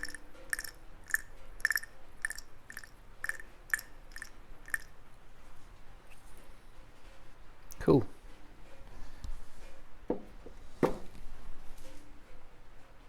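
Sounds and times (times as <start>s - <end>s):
oil pump gears clicking: 0.0s - 4.9s.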